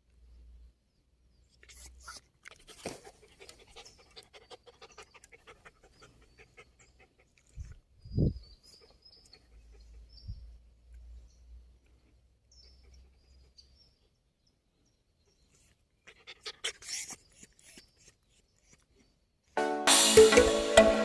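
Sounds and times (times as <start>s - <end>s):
dog panting quickly: 1.9s - 7.7s.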